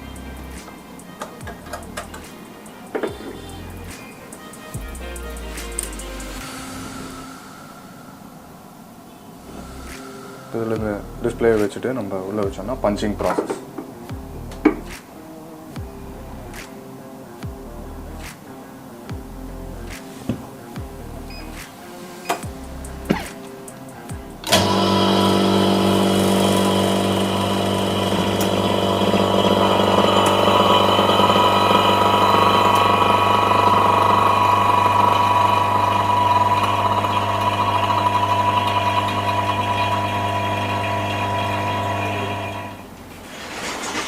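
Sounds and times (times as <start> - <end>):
laminating machine motor hum: 24.4 - 42.8.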